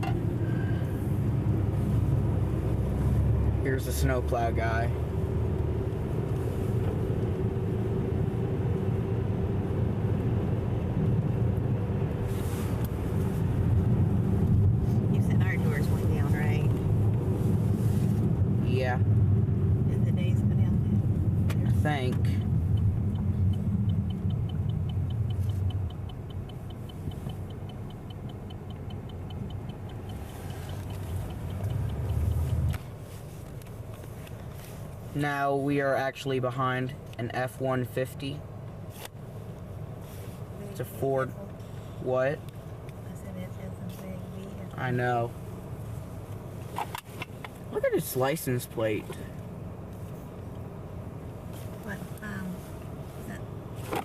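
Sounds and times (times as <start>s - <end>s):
car engine rumble: 0.0s - 54.0s
tyres on wet road: 0.0s - 54.0s
fast even ticking: 22.4s - 32.7s.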